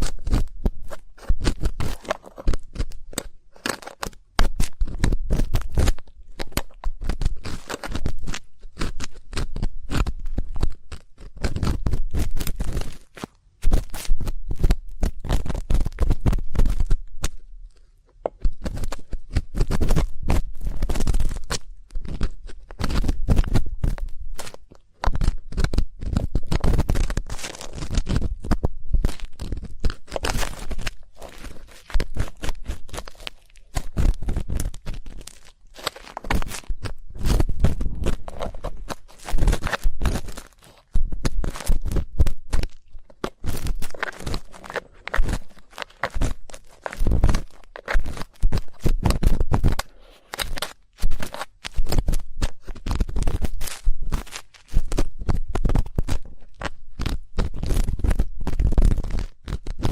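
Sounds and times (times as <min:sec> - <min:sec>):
ear pick scraping microphone: 0:25.2 - 0:56.6.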